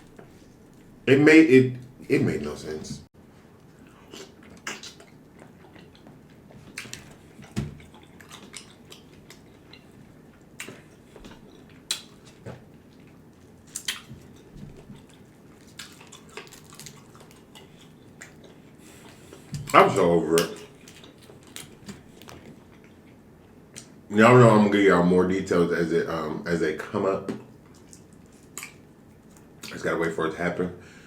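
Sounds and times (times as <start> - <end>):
chewing and mouth sounds: 3.7 - 24.0, 27.4 - 29.8.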